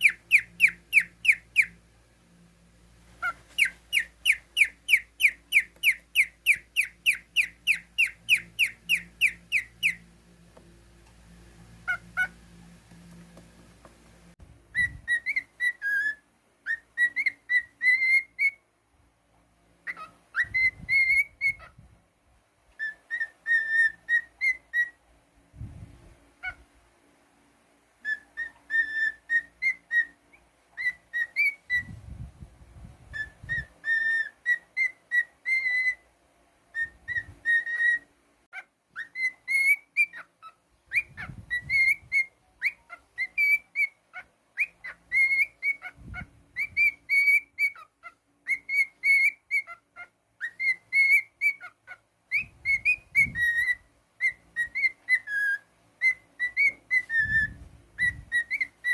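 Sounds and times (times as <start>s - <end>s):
cockatiel whistling: 0.0s - 1.8s, 3.2s - 10.1s, 11.8s - 12.4s, 14.7s - 18.6s, 19.8s - 21.8s, 22.8s - 25.0s, 28.0s - 32.0s, 33.1s - 36.1s, 36.7s - 58.9s.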